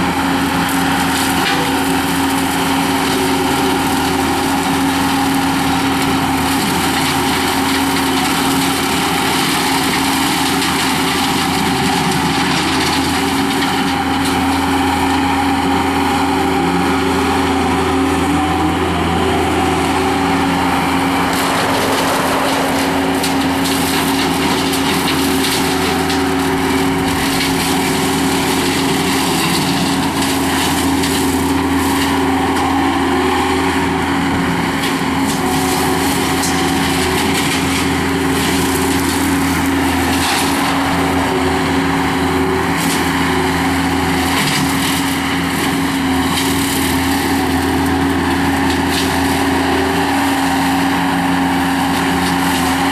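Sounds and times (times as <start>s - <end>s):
skid steer engine running: 0.0s - 52.9s.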